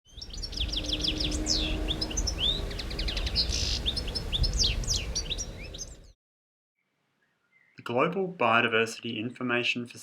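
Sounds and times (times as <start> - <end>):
birds singing and chirping: 0.1 - 6.2, 7.2 - 7.8.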